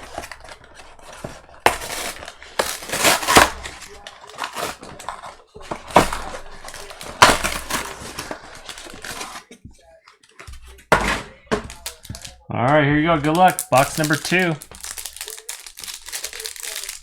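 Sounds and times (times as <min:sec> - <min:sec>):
cards and packaging rustling: 0:00.0 - 0:17.0.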